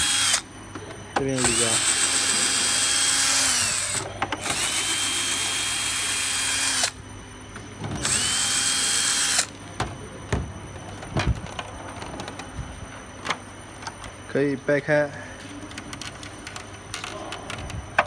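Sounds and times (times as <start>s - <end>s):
power driver whining: 0.0s - 0.5s, 1.2s - 10.4s.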